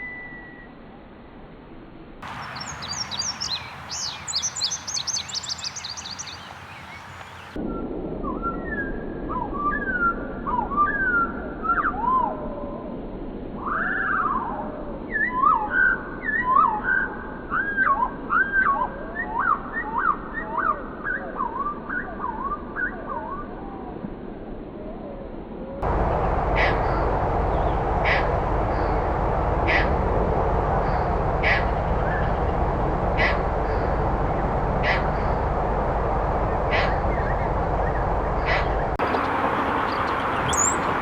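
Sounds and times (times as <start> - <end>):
steady noisy background: 25.8 - 41.0
short sharp bird calls: 38.5 - 41.0
bird whistling up and down: 39.9 - 40.9.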